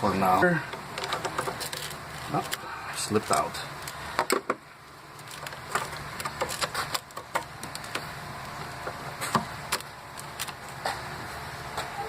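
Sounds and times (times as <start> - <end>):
steady low hum: 0.0 - 12.0
tools clicking and knocking: 0.7 - 1.9.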